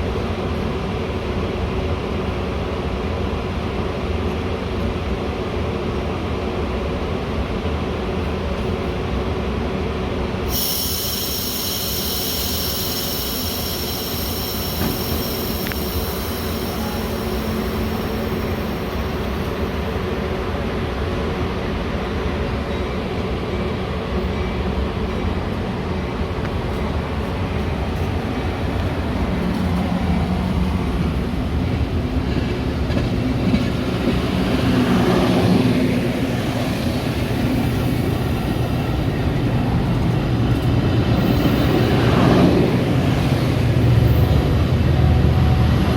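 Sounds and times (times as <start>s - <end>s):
train rumbling: 0.0s - 45.9s.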